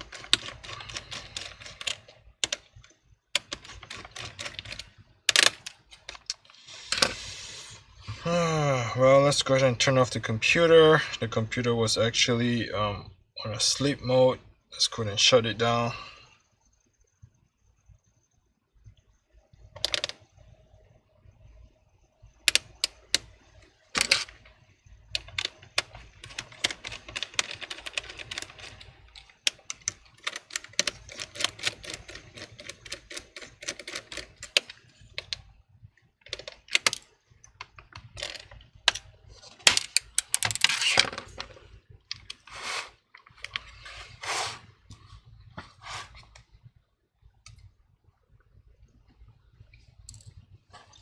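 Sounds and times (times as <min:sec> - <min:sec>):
rustling scrapes: 0:39.3 - 0:41.5, 0:42.4 - 0:46.4.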